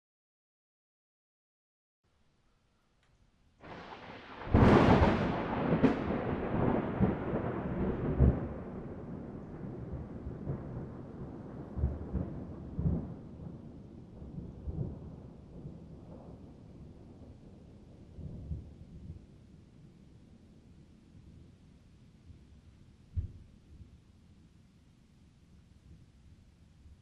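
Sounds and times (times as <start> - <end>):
thunder cracks and rumble: 3.6 - 19.3
low thumps: 23.1 - 23.5.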